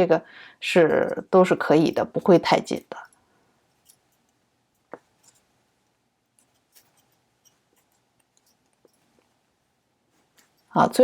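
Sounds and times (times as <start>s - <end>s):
knitting needles clicking: 3.8s - 9.4s.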